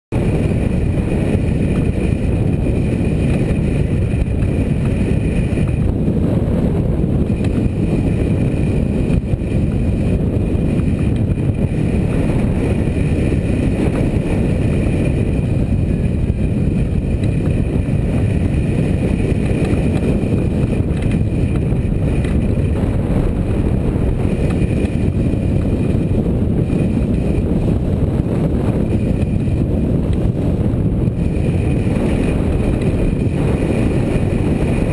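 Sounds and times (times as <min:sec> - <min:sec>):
strong wind on microphone: 0:00.1 - 0:34.9.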